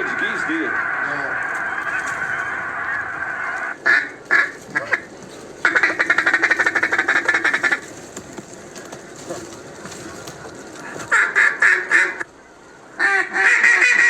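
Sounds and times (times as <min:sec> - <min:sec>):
duck call quacking: 0:00.0 - 0:07.8, 0:10.8 - 0:12.3, 0:13.0 - 0:14.0.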